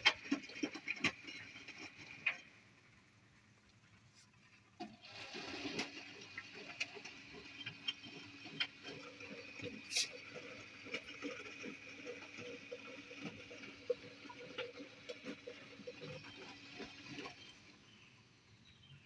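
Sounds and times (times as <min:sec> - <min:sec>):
washing machine hum: 0:00.0 - 0:19.0.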